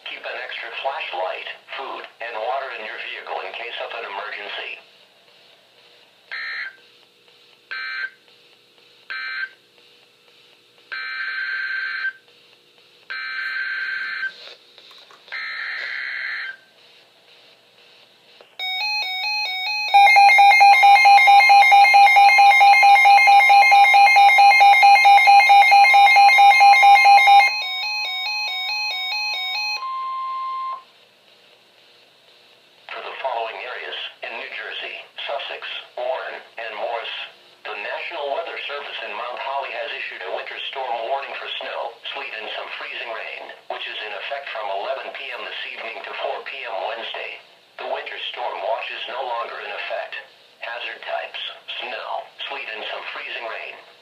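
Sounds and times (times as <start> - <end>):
pulsing electronic alarm: 6.3 - 6.8, 10.9 - 12.2, 13.1 - 14.3, 15.4 - 16.7, 18.6 - 30.8
steady whistle alarm tone: 18.6 - 30.8.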